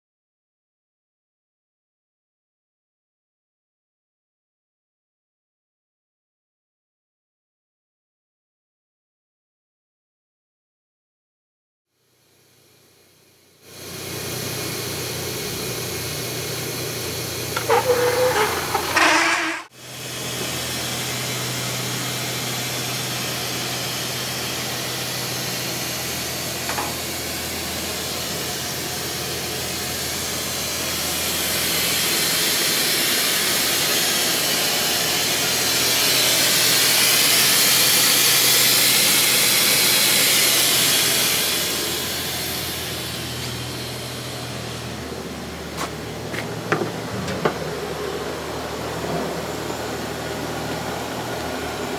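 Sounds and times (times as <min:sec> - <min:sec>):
loud clatter with squeal: 0:17.5 - 0:19.7.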